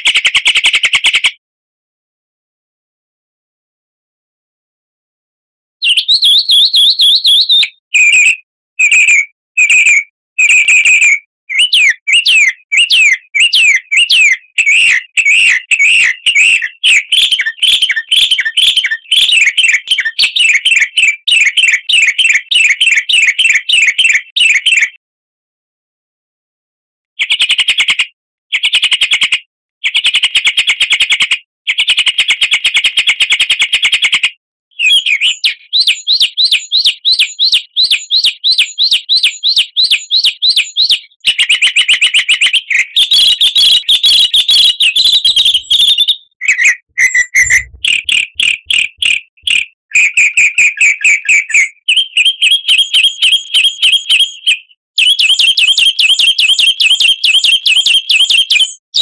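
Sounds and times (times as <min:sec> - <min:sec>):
songbird chirping: 0:05.8 - 0:08.3, 0:41.9 - 0:52.2.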